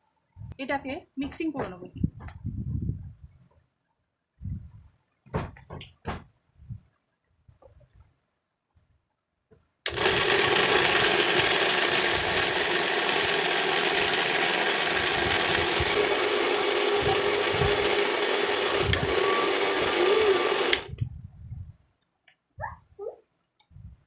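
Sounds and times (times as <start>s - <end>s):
mixer grinder running: 9.9s - 21.0s.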